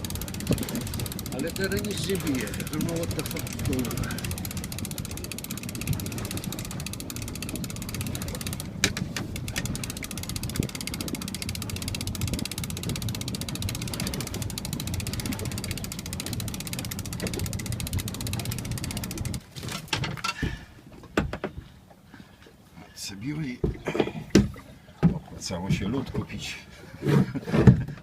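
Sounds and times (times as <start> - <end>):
boat motor running: 0.0 - 20.6.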